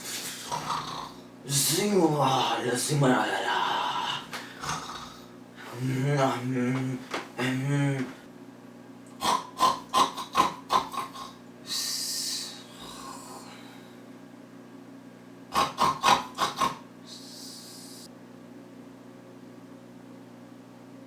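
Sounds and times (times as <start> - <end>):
person snoring: 0.0 - 8.2, 9.2 - 13.9, 15.5 - 18.1.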